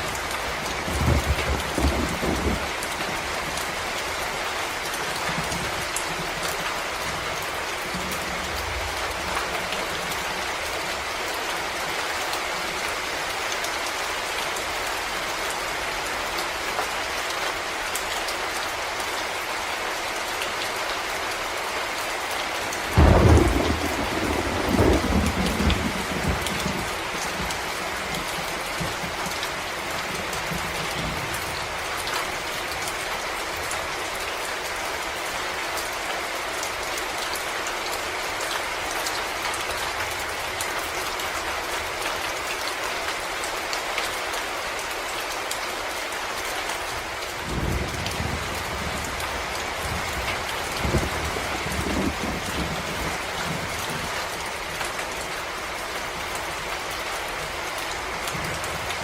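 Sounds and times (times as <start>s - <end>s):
steady rain in a forest: 0.0s - 59.0s
thunderclap rumbling: 0.2s - 3.9s, 22.9s - 32.0s, 47.4s - 54.8s.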